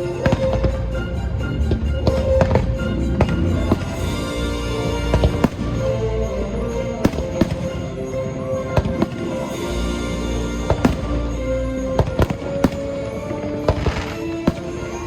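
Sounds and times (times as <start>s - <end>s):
music over loudspeakers: 0.0s - 15.0s
fireworks bangs: 3.2s - 15.0s.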